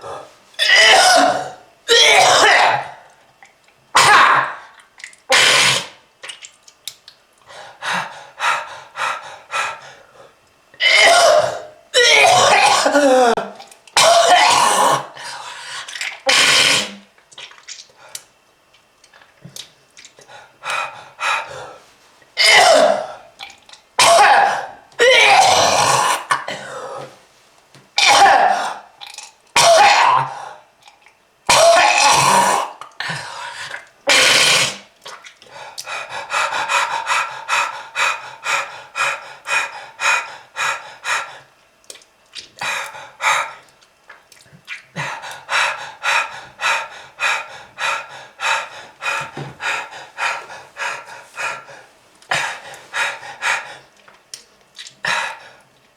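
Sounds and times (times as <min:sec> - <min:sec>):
person coughing harshly: 0:00.6 - 0:03.0, 0:10.8 - 0:15.1, 0:22.4 - 0:23.1, 0:24.0 - 0:26.8, 0:28.0 - 0:28.9, 0:29.6 - 0:30.3.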